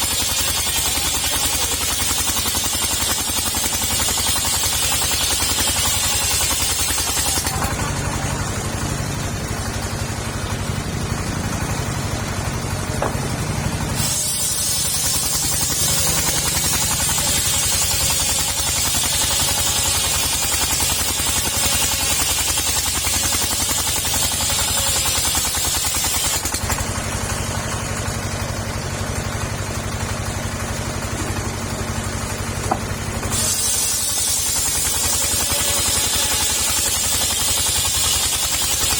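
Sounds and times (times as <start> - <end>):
saw blade hissing: 0.0 - 7.7, 13.0 - 26.6, 32.6 - 38.9
petrol engine running: 0.0 - 38.9.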